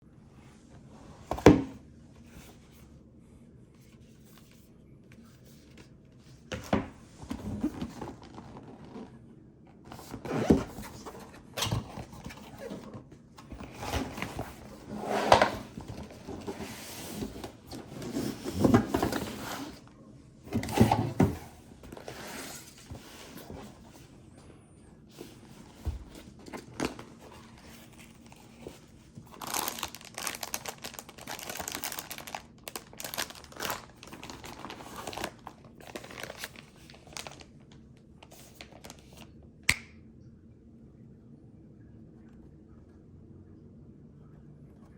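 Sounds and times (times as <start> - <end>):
box parts thudding and scraping: 10.0 - 19.8.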